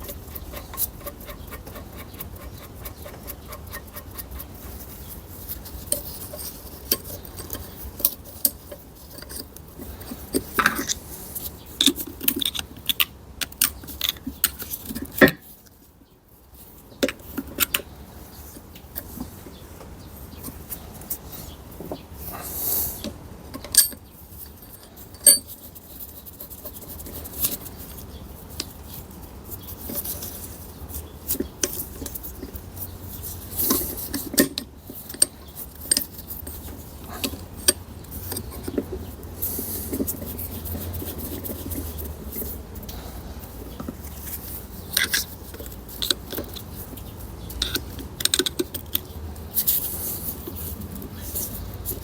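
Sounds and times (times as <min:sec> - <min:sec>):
metal parts and tools clinking: 0:00.0 - 0:15.6, 0:23.6 - 0:27.7, 0:31.3 - 0:42.6, 0:43.4 - 0:52.0.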